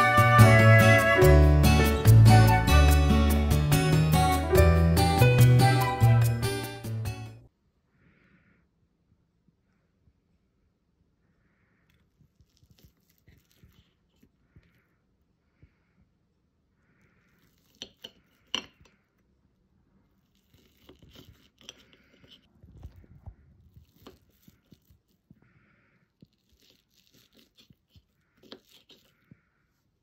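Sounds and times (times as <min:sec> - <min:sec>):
rustling or tearing: 0:12.0 - 0:14.4, 0:20.1 - 0:25.4, 0:26.1 - 0:29.8
small objects clicking and knocking: 0:17.5 - 0:19.0.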